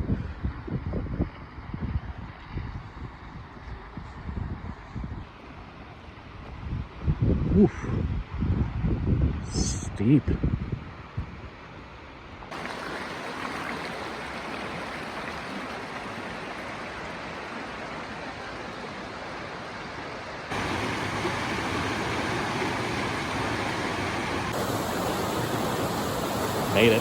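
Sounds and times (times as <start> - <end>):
waterfall rushing: 20.5 - 27.0.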